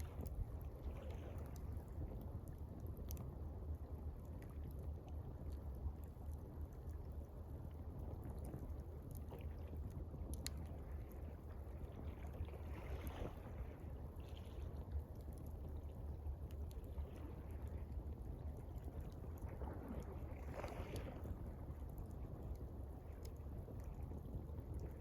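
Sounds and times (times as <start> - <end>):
water lapping: 0.0 - 3.2, 8.5 - 25.0
campfire crackling: 0.0 - 12.1, 14.8 - 25.0
steady low rumble: 0.0 - 25.0.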